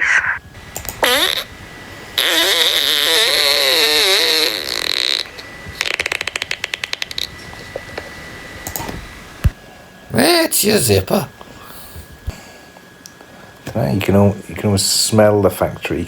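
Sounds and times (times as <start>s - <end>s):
raspy wavering squeal: 0.0s - 0.5s.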